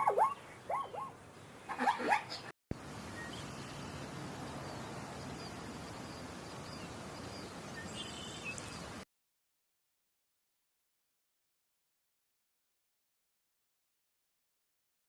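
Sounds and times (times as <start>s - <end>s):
faint bird chirps: 0.0s - 2.4s
outdoor background noise: 0.0s - 9.1s.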